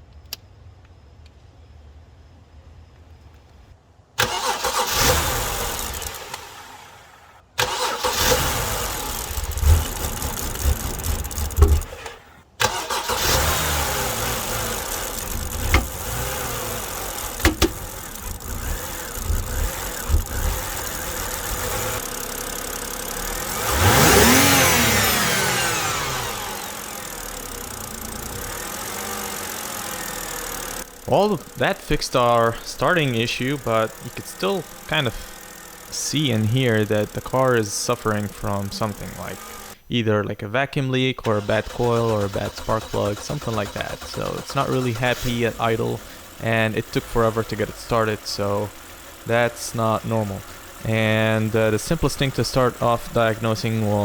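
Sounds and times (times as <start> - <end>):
car engine cranking and starting: 4.1 - 39.9, 41.2 - 54.0
engine revving: 4.2 - 39.8, 41.2 - 54.0
car engine idling: 4.2 - 39.9, 41.2 - 54.0.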